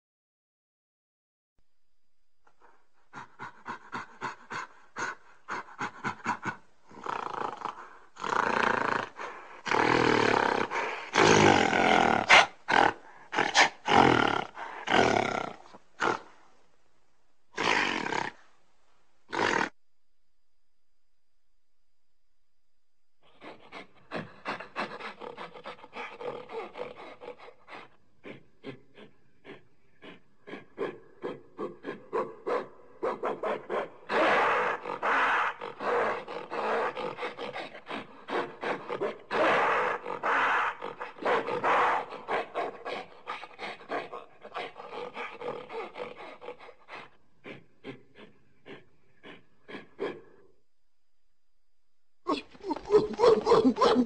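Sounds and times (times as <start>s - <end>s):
primate grunting calls: 3.1s - 16.4s, 19.3s - 19.8s, 23.3s - 50.5s, 52.3s - 54.0s.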